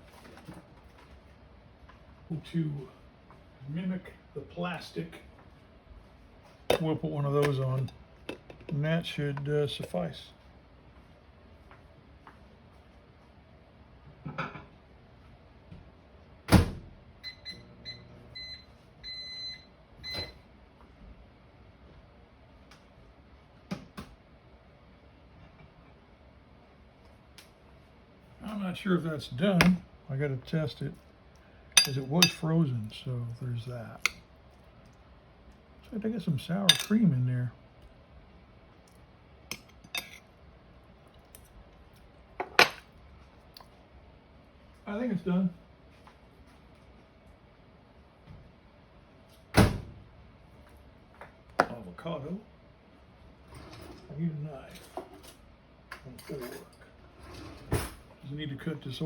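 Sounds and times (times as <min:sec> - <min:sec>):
microwave keypad beeps: 0:17.2 - 0:20.4
metal utensil clinking on plate: 0:31.8 - 0:32.4, 0:36.7 - 0:37.0, 0:39.5 - 0:40.2.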